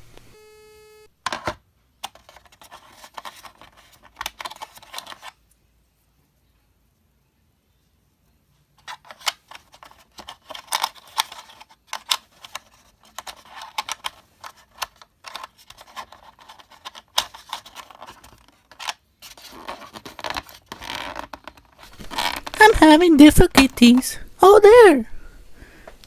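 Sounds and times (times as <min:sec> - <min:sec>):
packaging crinkling and tearing: 0:08.9 - 0:22.8.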